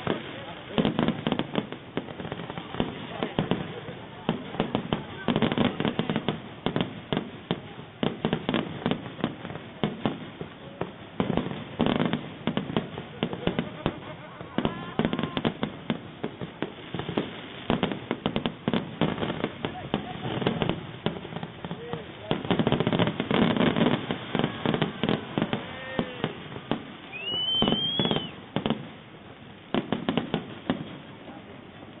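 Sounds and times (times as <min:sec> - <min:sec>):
crackling hiss: 0:00.0 - 0:32.0
fireworks bangs: 0:00.0 - 0:32.0
whistling firework shell: 0:27.0 - 0:28.7.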